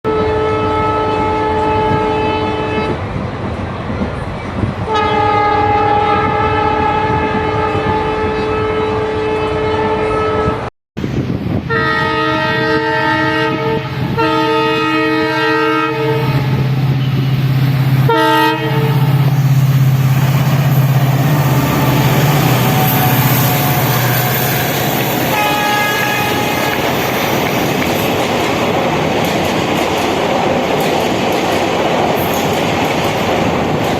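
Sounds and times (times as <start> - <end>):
locomotive horn blasts: 0.1 - 3.0, 4.9 - 10.7, 11.7 - 19.2, 20.8 - 27.1
locomotive engine humming: 0.2 - 33.9.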